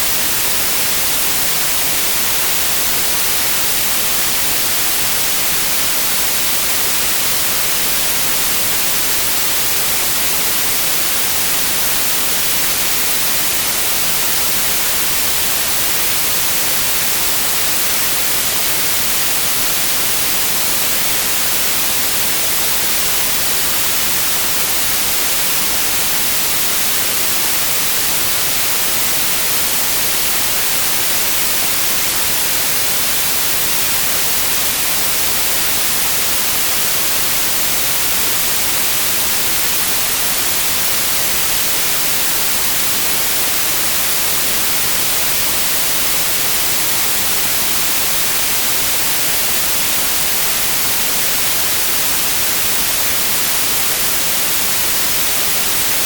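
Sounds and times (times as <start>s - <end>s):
white noise hiss: 0.0s - 56.0s.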